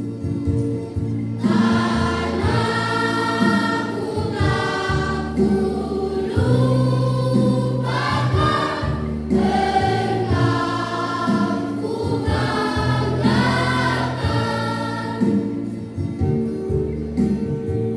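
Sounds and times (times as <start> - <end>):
choir singing: 1.4 - 15.6.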